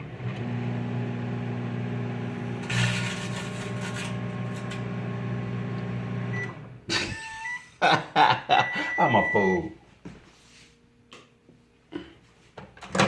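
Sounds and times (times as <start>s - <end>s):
microwave oven humming: 0.0s - 7.7s
short beep: 8.6s - 9.7s.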